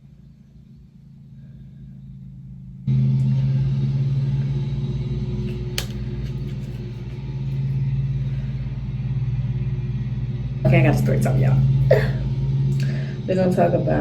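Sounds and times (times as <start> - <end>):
lawn mower engine humming: 2.9 - 13.1.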